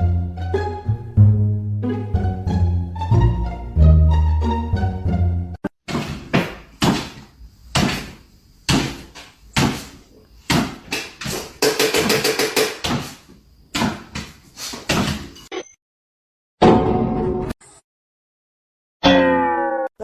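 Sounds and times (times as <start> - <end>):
knocks or thuds: 5.9 - 15.3.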